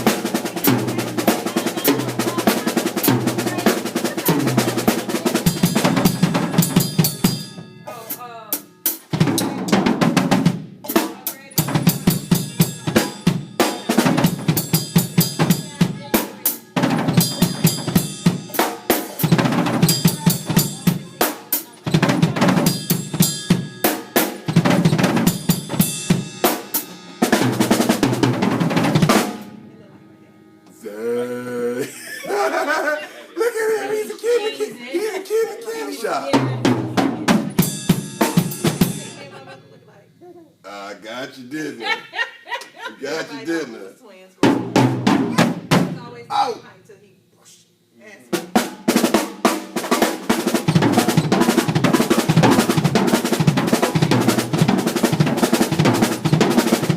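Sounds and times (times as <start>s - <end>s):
snare and bass drum rolls: 44.4s - 46.1s, 48.4s - 56.9s.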